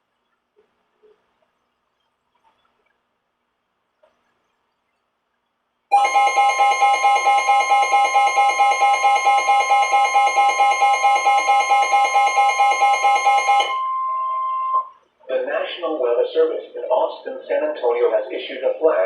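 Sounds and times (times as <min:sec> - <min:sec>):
electronic alert tone beeping: 0:05.9 - 0:14.9.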